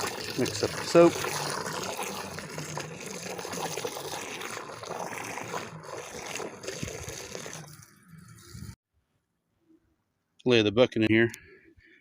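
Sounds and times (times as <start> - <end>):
water sloshing in bucket: 0.0 - 8.5.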